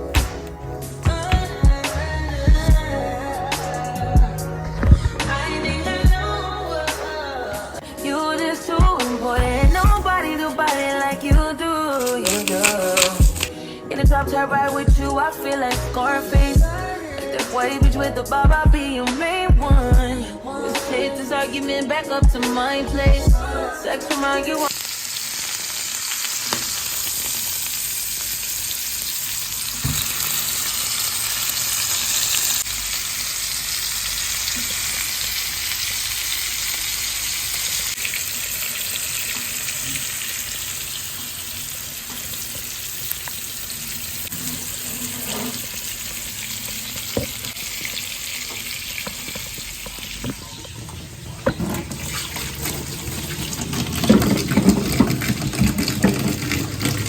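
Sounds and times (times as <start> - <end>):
meat sizzling in hot oil: 12.2 - 13.5, 24.7 - 50.7.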